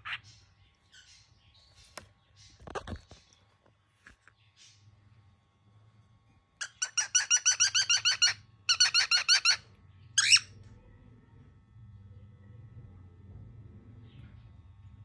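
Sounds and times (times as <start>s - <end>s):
cockatiel shrill calls: 6.6s - 9.6s.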